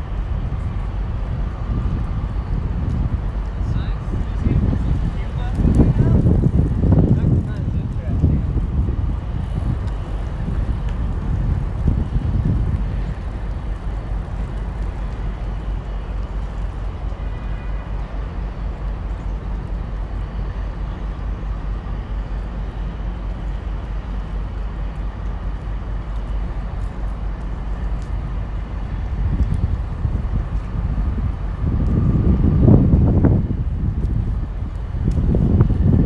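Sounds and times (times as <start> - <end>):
low rumble of background noise: 0.0 - 36.0.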